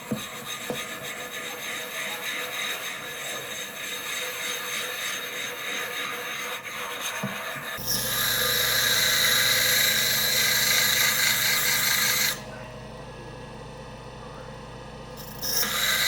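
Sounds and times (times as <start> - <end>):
sharpening machine motor humming: 0.0 - 16.0
high grinding hiss: 15.2 - 16.0.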